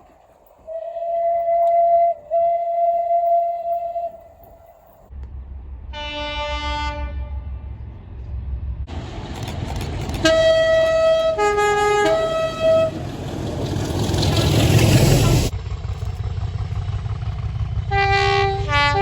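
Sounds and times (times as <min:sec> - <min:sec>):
train horn: 0:00.7 - 0:04.6, 0:05.9 - 0:07.8, 0:10.2 - 0:13.3, 0:17.9 - 0:19.0
low rumble: 0:04.1 - 0:09.7.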